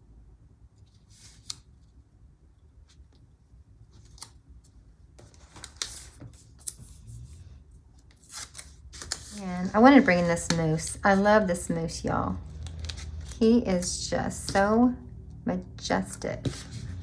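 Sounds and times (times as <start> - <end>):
paper rustling: 8.0 - 14.9, 16.4 - 17.0
scissors snipping paper: 12.4 - 14.9.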